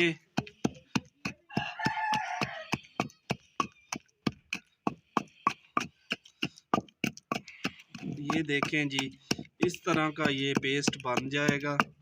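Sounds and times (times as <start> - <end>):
utensil knocking in a bowl: 0.0 - 12.0
rooster crowing: 1.5 - 3.0.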